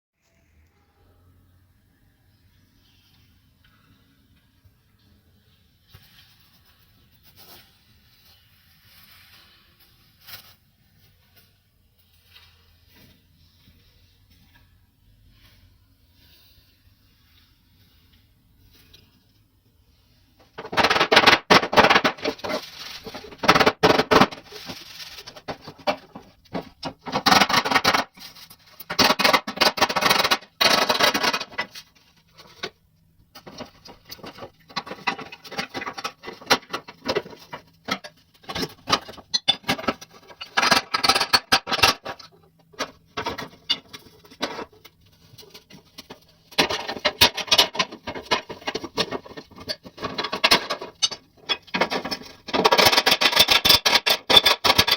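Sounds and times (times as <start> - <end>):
scraping and rubbing with clicks: 20.4 - 32.8, 33.4 - 54.9.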